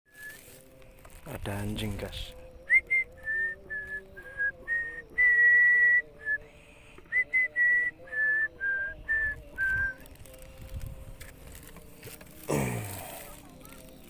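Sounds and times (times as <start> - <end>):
person whistling short notes: 0.1 - 0.6, 2.6 - 6.4, 7.0 - 10.1.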